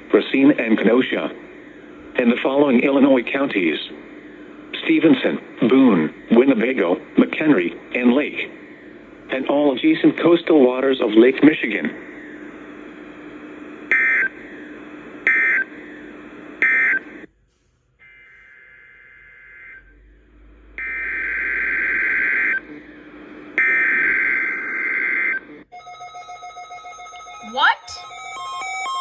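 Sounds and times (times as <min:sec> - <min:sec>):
low steady hum: 0:00.0 - 0:17.3.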